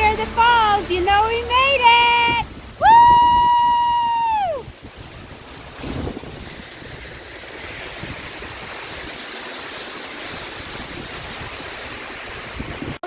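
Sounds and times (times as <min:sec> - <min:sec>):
wind buffeting microphone: 0:00.0 - 0:09.2, 0:10.2 - 0:13.0
waterfall roaring: 0:00.0 - 0:13.0.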